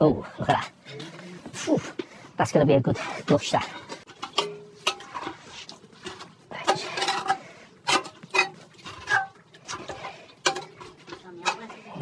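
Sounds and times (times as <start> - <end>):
metallic clattering and scraping: 0.5 - 12.0
ringing metal clanks: 3.5 - 5.4.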